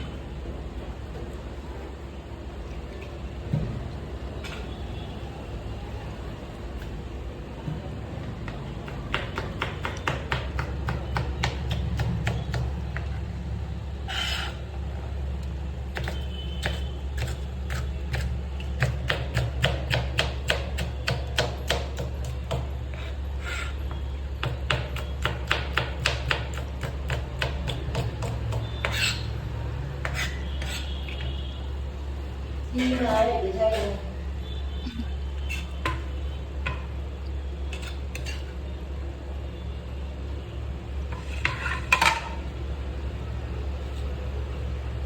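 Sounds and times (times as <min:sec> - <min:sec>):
knife chopping on cutting board: 0:08.5 - 0:13.1, 0:16.0 - 0:23.7, 0:24.4 - 0:29.3.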